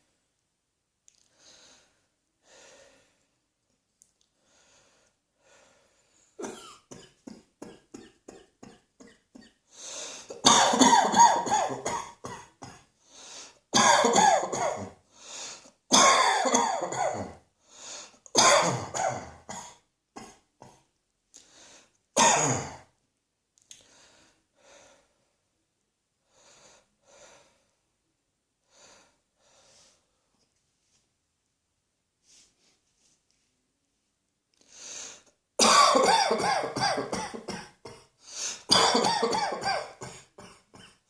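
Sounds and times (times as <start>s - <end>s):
person breathing faintly: 1.2s - 3.4s, 4.3s - 6.4s, 9.7s - 10.4s, 13.0s - 13.7s, 15.1s - 15.8s, 17.6s - 18.3s, 21.4s - 22.0s, 23.7s - 25.4s, 26.2s - 27.8s, 28.6s - 31.0s, 34.6s - 35.4s, 38.2s - 38.7s
person coughing: 6.4s - 9.6s, 10.2s - 12.9s, 13.8s - 15.0s, 15.9s - 17.4s, 18.4s - 20.9s, 22.2s - 22.9s, 35.6s - 41.0s.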